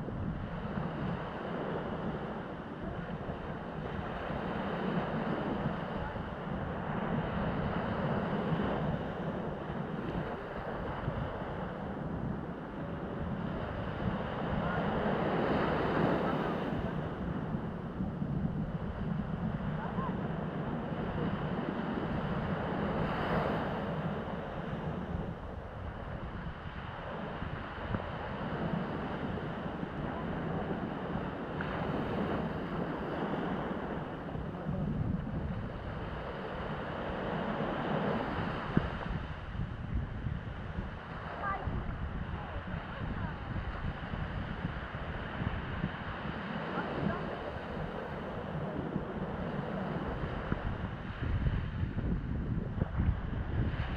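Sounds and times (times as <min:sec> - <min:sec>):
sea surf washing: 0:00.0 - 0:53.9
wind buffeting microphone: 0:00.0 - 0:53.9.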